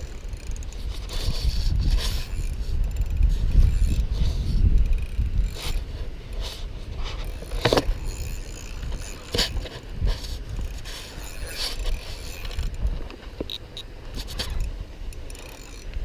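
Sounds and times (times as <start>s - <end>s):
fishing reel scrapes and clicks: 0.0s - 16.0s
wind rumble on microphone: 0.0s - 16.0s.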